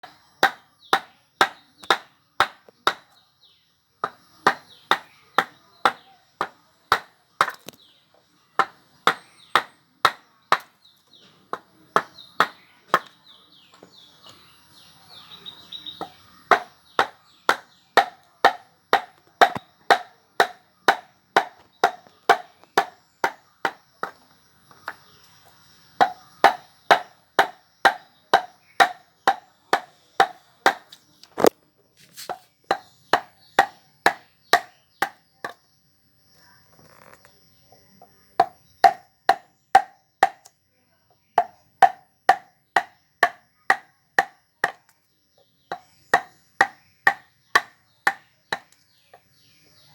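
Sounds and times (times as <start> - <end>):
carving tool striking wood: 0.0 - 3.2, 4.0 - 7.8, 8.6 - 10.8, 11.5 - 13.2, 16.0 - 24.2, 26.0 - 31.5, 32.2 - 35.6, 38.4 - 40.5, 41.4 - 44.9, 45.7 - 48.8.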